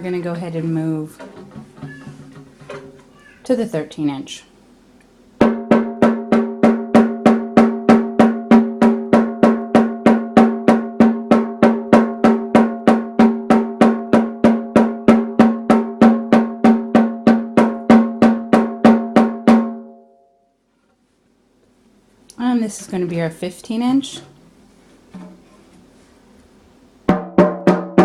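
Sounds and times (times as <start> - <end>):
frame drum steady beat: 0.0 - 19.8, 26.7 - 28.0.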